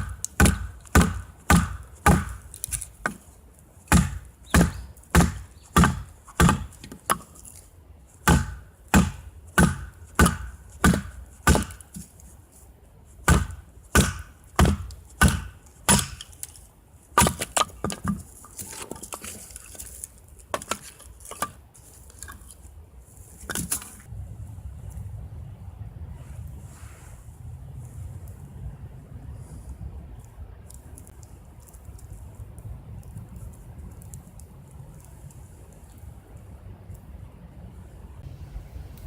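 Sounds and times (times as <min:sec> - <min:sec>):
firewood being chopped: 0:00.0 - 0:07.6, 0:08.2 - 0:12.1, 0:13.2 - 0:21.6
wood knocks and cracks: 0:03.9 - 0:07.4, 0:13.3 - 0:16.6, 0:17.2 - 0:21.6.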